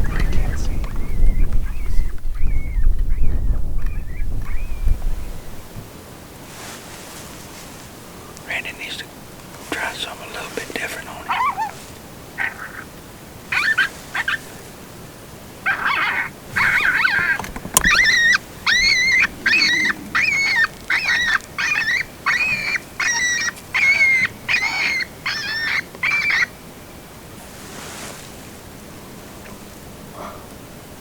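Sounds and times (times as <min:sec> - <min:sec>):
rough coyote-like calls: 0:09.9 - 0:14.9, 0:15.6 - 0:26.6
predator call yelping: 0:11.0 - 0:12.9, 0:13.5 - 0:14.6, 0:15.6 - 0:26.6.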